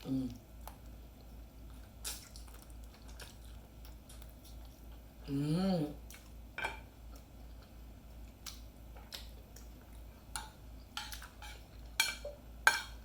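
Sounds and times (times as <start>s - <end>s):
cutlery clinking on a plate: 11.0s - 13.0s.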